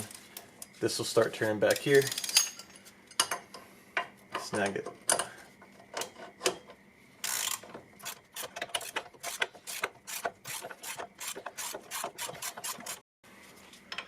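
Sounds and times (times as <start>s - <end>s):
ratchet scrape: 7.2s - 13.0s.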